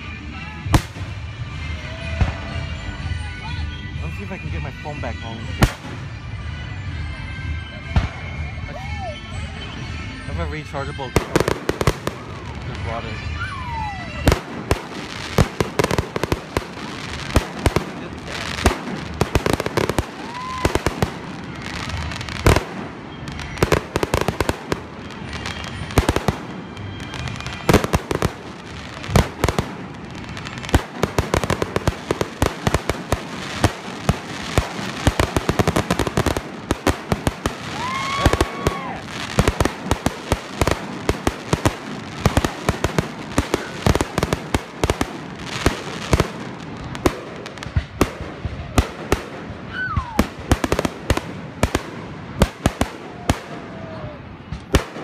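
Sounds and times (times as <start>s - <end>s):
fireworks bangs and crackling: 0.0s - 7.2s, 7.8s - 9.5s, 10.2s - 55.0s
firework whistles: 10.9s - 47.5s.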